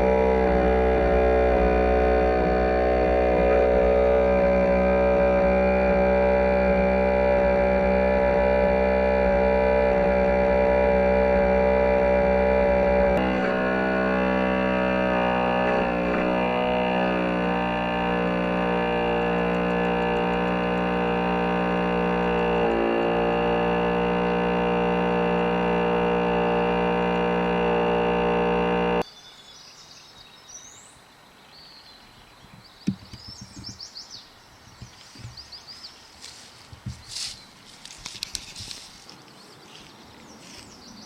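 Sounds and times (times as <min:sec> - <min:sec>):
distorted electric guitar music: 0:00.0 - 0:29.0
birds chirping: 0:00.0 - 0:41.0.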